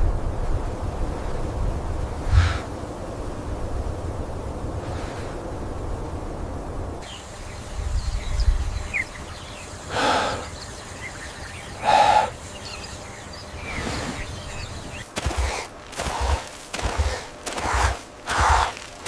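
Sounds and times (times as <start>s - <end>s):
small birds chirping: 7.0s - 19.0s.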